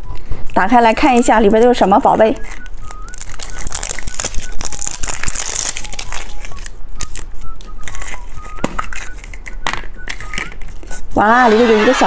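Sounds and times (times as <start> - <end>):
plastic wrapper crinkling: 2.4 - 11.0.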